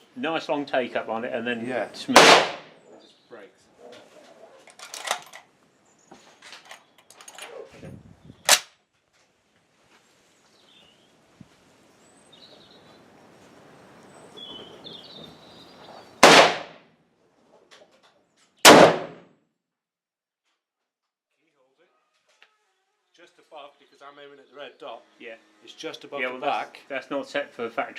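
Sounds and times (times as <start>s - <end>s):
rifle shots: 2.1s - 2.8s, 16.2s - 16.8s, 18.6s - 19.3s
short sharp crack: 8.5s - 8.8s.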